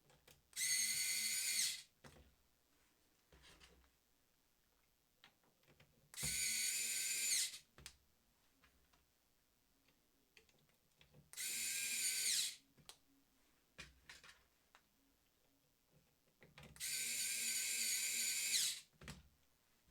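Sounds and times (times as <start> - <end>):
cordless screwdriver motor whining: 0.6 - 1.8, 6.2 - 7.6, 11.4 - 12.6, 16.8 - 18.8.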